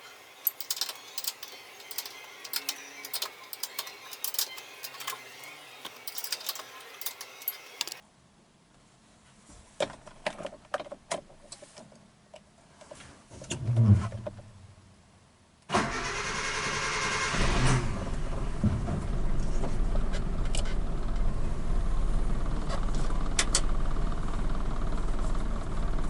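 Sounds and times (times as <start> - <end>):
metal tools clinking: 0.0 - 8.0.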